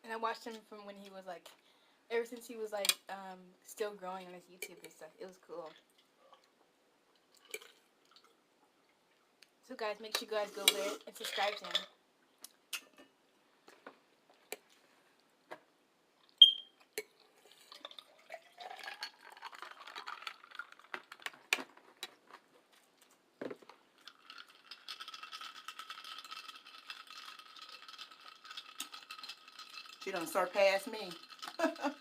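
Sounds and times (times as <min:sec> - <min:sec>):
faint chewing: 0:05.6 - 0:09.6, 0:12.4 - 0:30.2.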